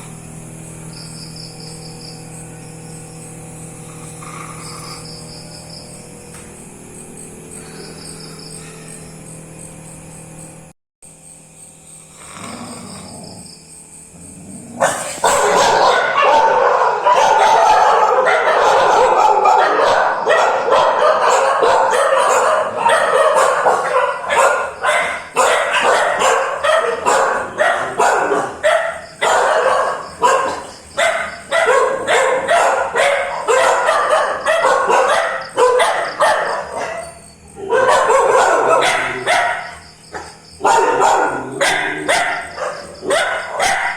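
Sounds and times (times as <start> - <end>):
dog barking rapidly: 14.8 - 43.9.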